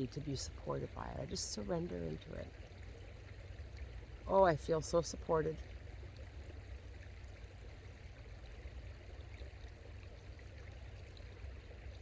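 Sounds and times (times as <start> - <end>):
creek running: 0.0 - 12.0.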